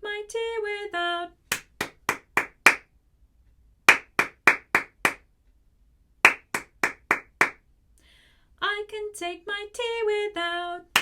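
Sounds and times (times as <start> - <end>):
quick hand claps: 1.5 - 2.9, 3.9 - 5.2, 6.2 - 7.6.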